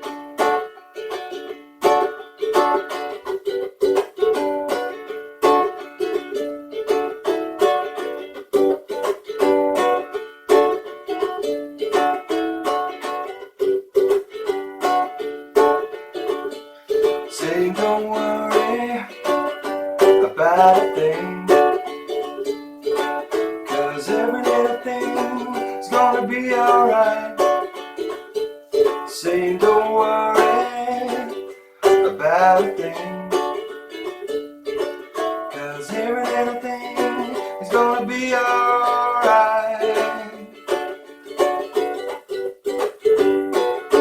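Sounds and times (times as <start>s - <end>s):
ukulele strumming chords: 0.0s - 44.0s.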